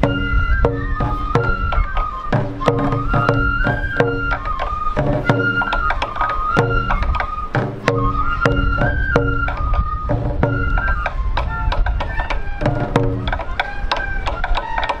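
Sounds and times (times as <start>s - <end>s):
bamboo flute melody: 0.0s - 15.0s
taiko drum beats: 0.0s - 15.0s.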